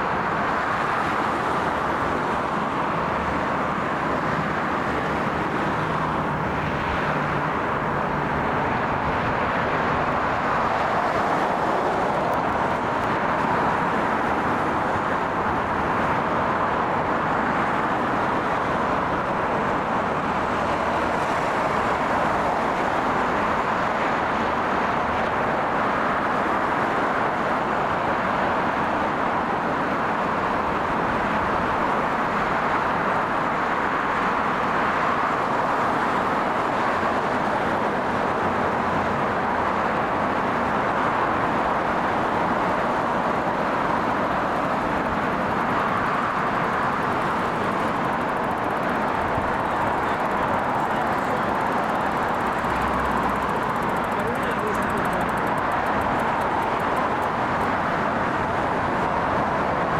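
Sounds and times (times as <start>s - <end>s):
steady engine hum: 0.0s - 25.2s, 29.4s - 59.6s.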